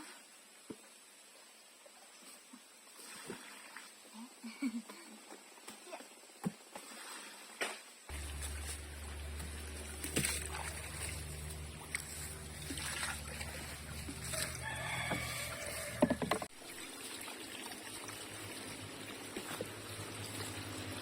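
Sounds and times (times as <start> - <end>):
low steady hum: 8.1 - 16.0
rooster crowing: 14.2 - 16.5.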